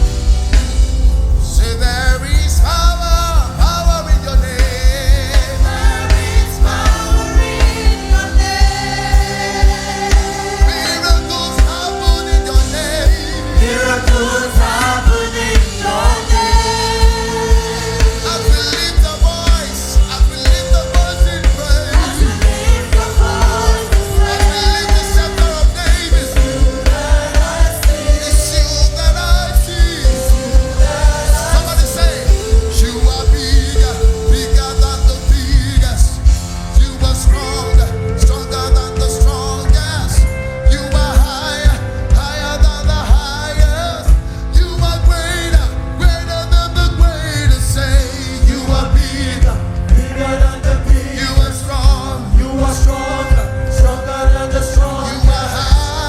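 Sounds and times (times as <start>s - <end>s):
band playing upbeat gospel music: 0.0s - 56.0s
bass drum beat: 0.0s - 56.0s
people singing: 1.6s - 56.0s.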